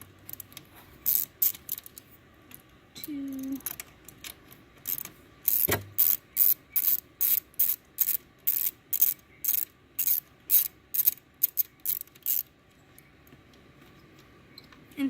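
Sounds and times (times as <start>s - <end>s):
ratchet clicking: 0.0s - 2.0s, 3.4s - 12.5s.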